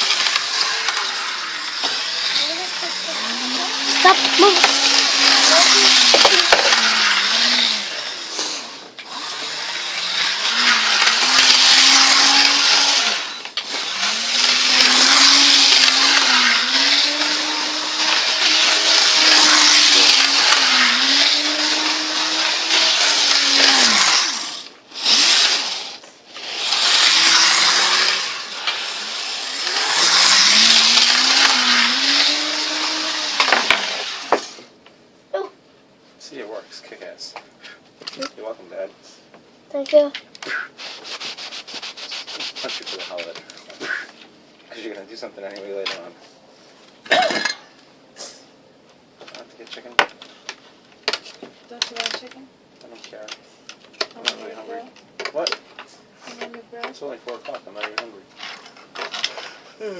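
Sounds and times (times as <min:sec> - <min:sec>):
pad scraping along rails: 0:00.0 - 0:13.4
model train motor humming: 0:00.0 - 0:34.6.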